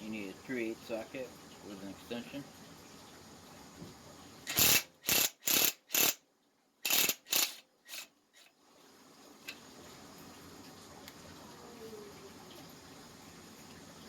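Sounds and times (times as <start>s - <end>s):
ratchet wrench strokes: 4.5s - 6.2s, 6.8s - 8.5s.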